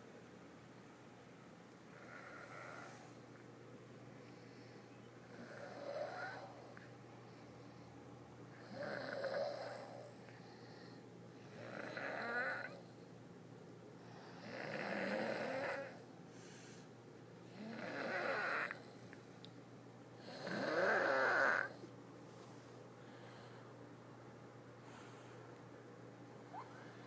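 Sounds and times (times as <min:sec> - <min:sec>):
person snoring: 0:20.2 - 0:21.8.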